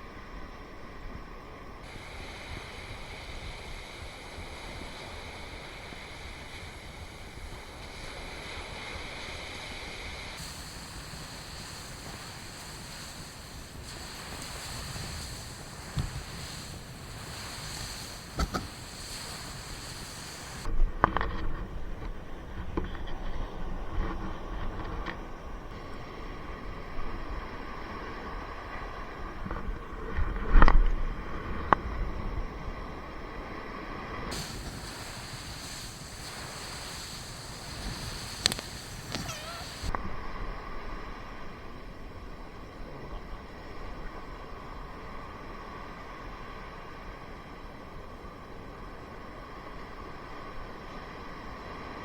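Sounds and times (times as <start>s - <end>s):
surf: 10.4s - 20.7s, 34.3s - 40.0s
wind buffeting microphone: 10.4s - 20.7s, 34.3s - 39.9s.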